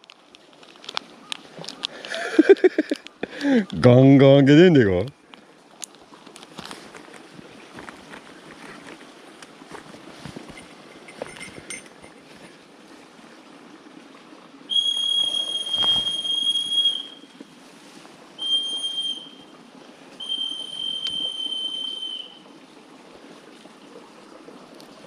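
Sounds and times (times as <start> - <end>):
high whistle blasts: 14.7 - 17.4, 18.4 - 19.4, 20.2 - 22.4.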